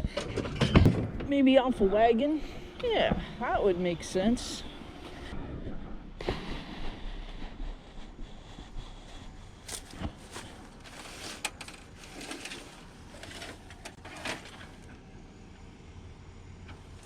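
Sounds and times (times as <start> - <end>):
junk being handled clattering: 0.0 - 1.4, 9.6 - 15.0.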